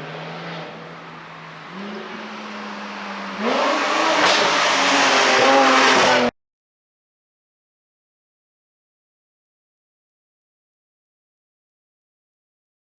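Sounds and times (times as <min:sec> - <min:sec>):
car engine idling and revving: 0:00.0 - 0:06.3.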